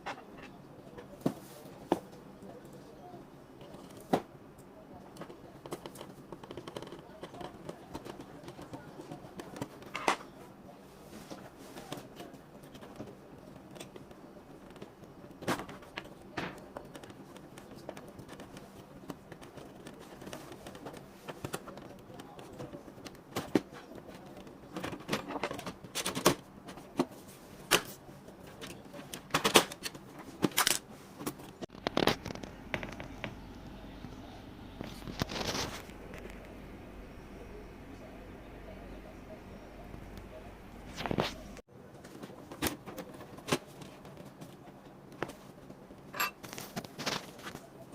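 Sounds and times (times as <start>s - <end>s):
clicks and taps of plastic parts: 5.1s - 10.2s.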